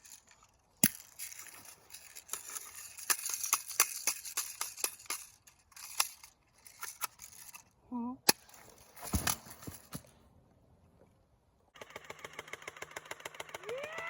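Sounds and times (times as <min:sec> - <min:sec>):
crunching and rustling: 0:08.4 - 0:10.2.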